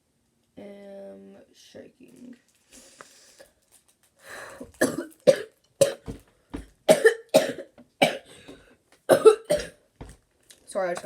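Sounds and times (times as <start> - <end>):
girl talking: 0.6 - 2.4, 10.7 - 11.0.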